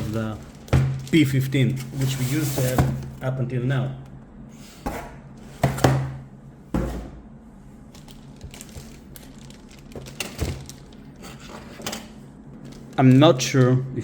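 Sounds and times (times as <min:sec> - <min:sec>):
cardboard packaging rustling: 0:00.0 - 0:03.2, 0:07.9 - 0:13.7
loud thumps: 0:00.7 - 0:01.2.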